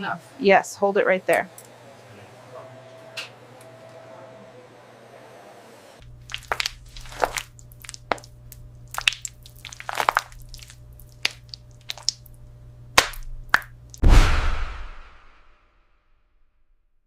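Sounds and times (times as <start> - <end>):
crunching and cracking: 6.0 - 12.4, 13.0 - 14.0
steady low hum: 6.0 - 15.4.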